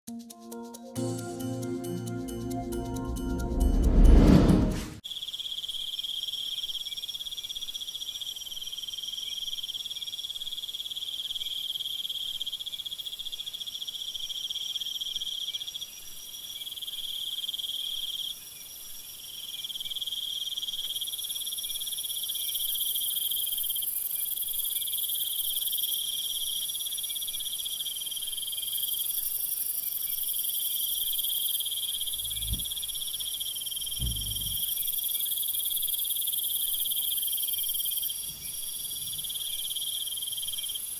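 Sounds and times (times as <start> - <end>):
crickets trilling: 5.1 - 40.9
low thumps: 32.1 - 33.3, 33.9 - 34.7.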